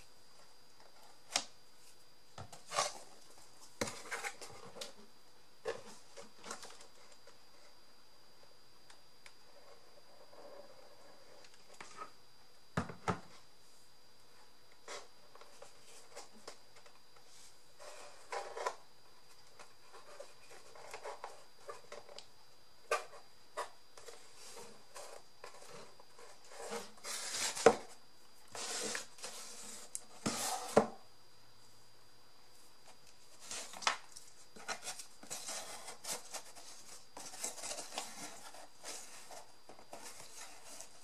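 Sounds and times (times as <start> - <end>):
paper and cardboard rustling: 33.2 - 41.0.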